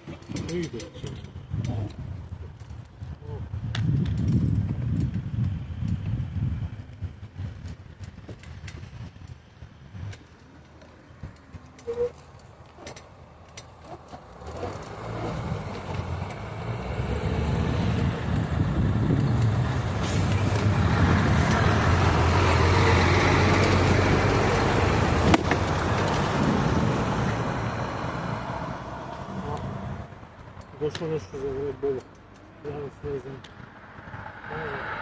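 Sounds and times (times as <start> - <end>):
vehicle passing by: 13.8 - 32.0, 32.6 - 35.0.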